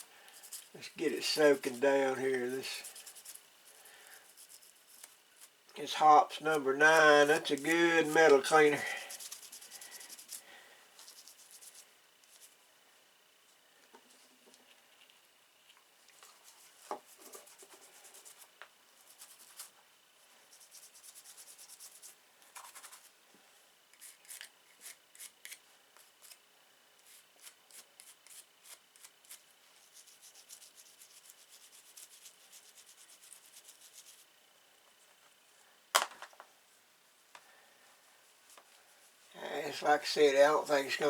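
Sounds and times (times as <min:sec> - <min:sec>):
scrubbing a knife blade: 0:00.0 - 0:05.5, 0:06.2 - 0:10.4.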